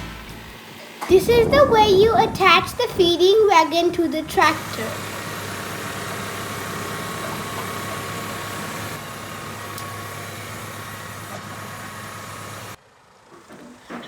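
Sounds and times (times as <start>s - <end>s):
tractor engine running: 0.0s - 14.0s.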